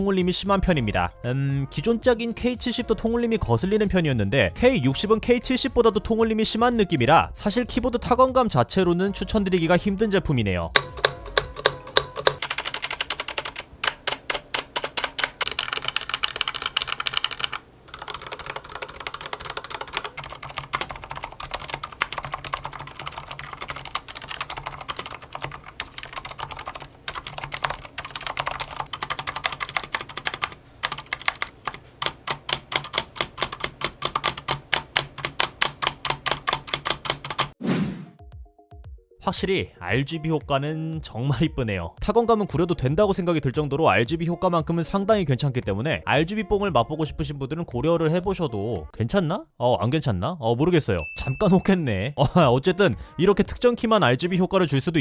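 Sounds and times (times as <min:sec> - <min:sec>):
mechanical keyboard typing: 0:10.8 - 0:37.6.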